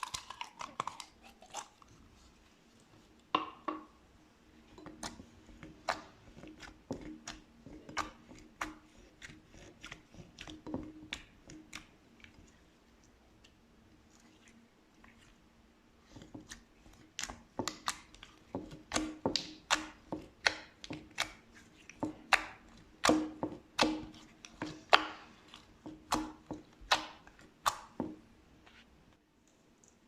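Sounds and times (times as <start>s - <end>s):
slime squished wet pops: 22.3s - 25.3s.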